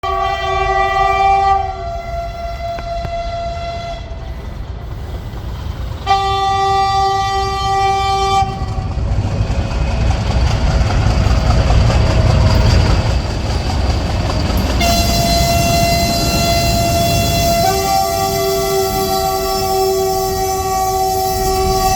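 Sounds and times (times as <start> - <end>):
locomotive horn blast: 0.0 - 4.6, 6.0 - 9.0, 14.6 - 21.9
higher locomotive signal: 0.0 - 21.9
locomotive engine and rolling wagons: 0.0 - 21.9.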